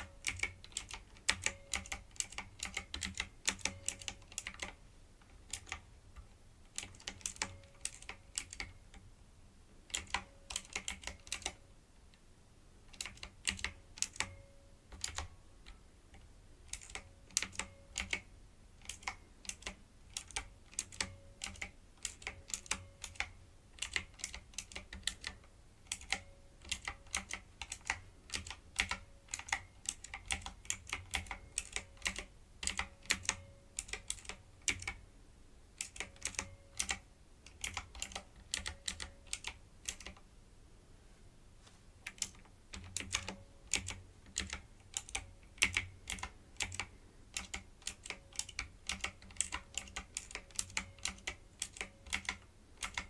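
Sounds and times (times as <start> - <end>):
typewriter-style keyboard key clicks: 0.0 - 4.8, 16.7 - 18.2, 18.8 - 35.0, 35.8 - 40.2, 42.1 - 53.0.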